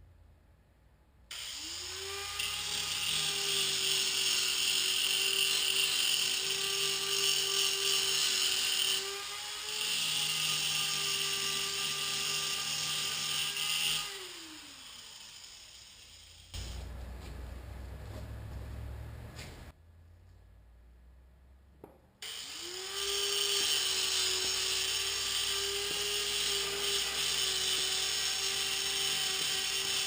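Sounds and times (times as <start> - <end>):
grinder grinding steel: 1.3 - 17.3, 22.2 - 30.0
angle grinder whining: 1.3 - 17.4, 22.2 - 30.0.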